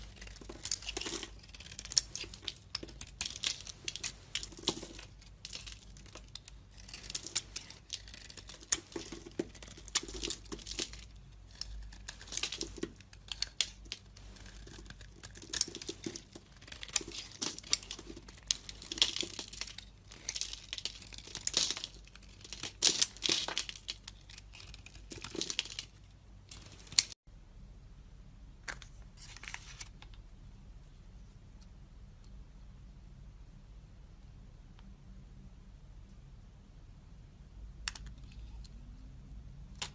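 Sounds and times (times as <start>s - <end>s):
soap cubes crunching: 0.0s - 27.1s.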